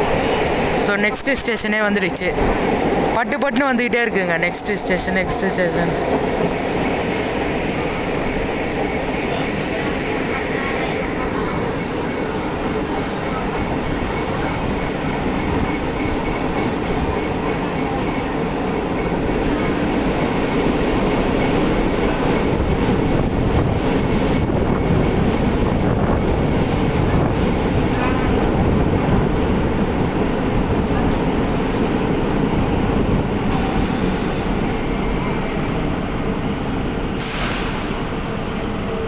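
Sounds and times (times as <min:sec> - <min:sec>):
train wheels rumbling on rails: 0:00.0 - 0:39.0.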